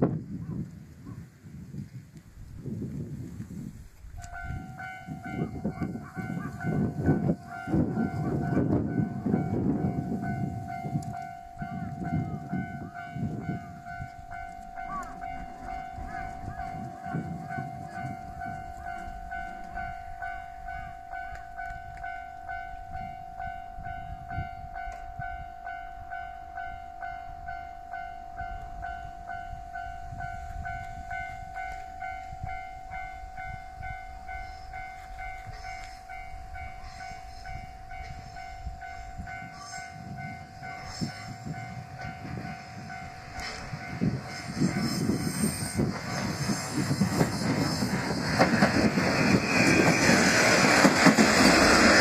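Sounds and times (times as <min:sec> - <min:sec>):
train rumble and clatter: 0:04.0 - 0:52.0
level crossing alarm bell: 0:04.2 - 0:45.2.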